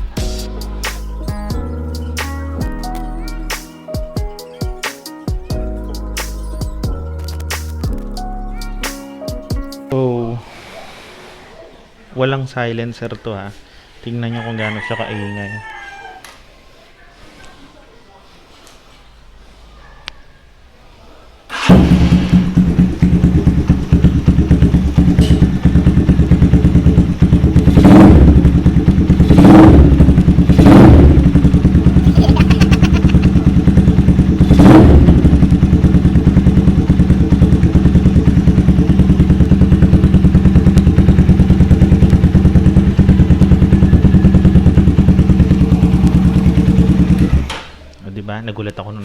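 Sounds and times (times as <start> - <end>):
loud motorcycle engine revving: 21.5 - 47.6.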